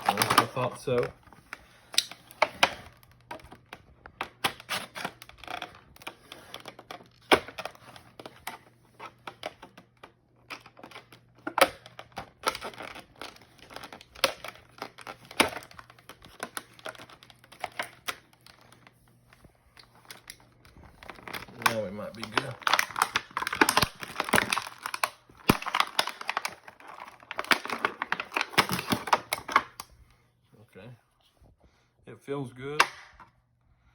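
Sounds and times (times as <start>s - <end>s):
packaging clicks and taps: 1.9s - 18.9s, 19.8s - 29.9s
cardboard tearing: 21.0s - 29.4s.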